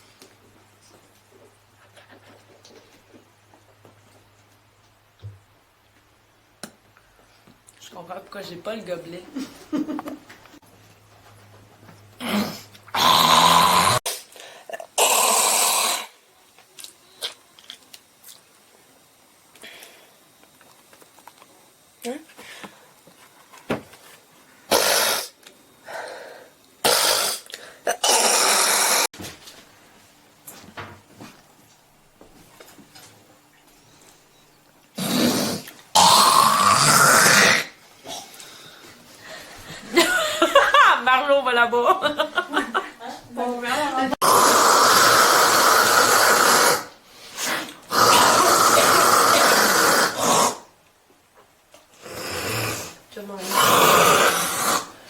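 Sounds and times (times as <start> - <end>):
person coughing and hawking: 48.1 - 50.6.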